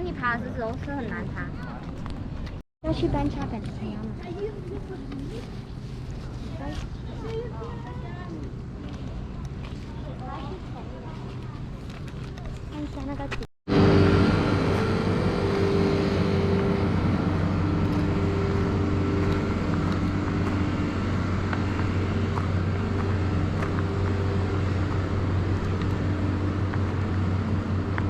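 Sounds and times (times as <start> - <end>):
road noise: 0.0 - 28.0
car engine hum: 13.7 - 28.0.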